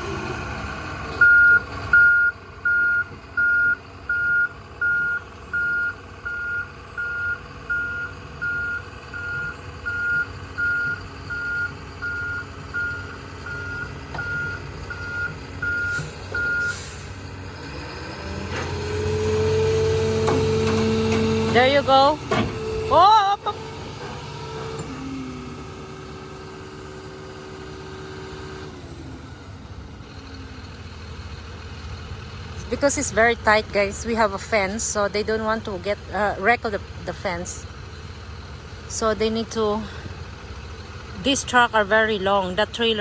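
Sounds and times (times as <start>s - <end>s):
engine: 0.0s - 43.0s
backup alarm beeping: 1.2s - 16.8s.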